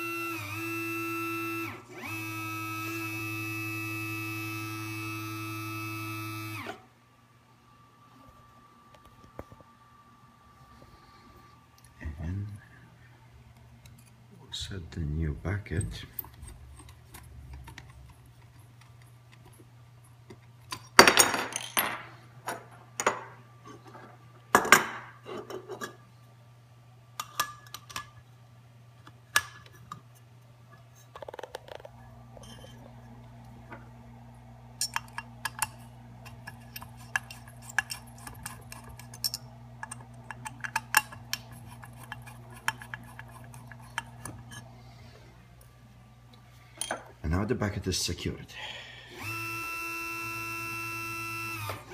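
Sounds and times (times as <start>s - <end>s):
machine humming: 0.0s - 16.2s, 48.6s - 51.9s
second steady hum: 0.0s - 20.6s, 25.4s - 51.9s.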